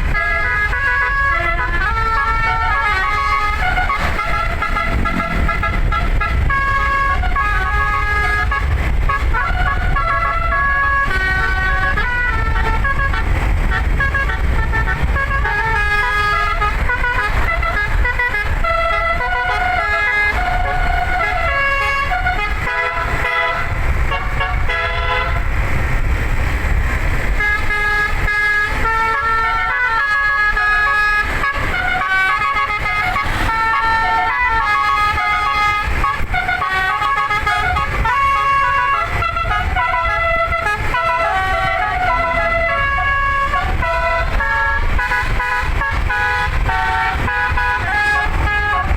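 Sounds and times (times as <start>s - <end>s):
musical air horn tune: 0.0s - 25.6s, 27.4s - 48.9s
steady low rumble: 0.0s - 48.9s.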